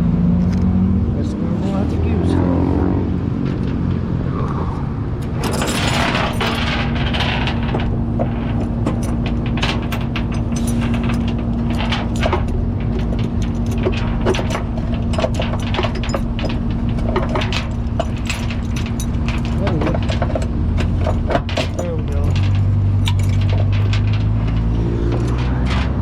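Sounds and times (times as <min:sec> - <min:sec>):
vehicle engine idling: 0:01.1 - 0:26.0
light metallic clinks and rattles: 0:05.2 - 0:26.0.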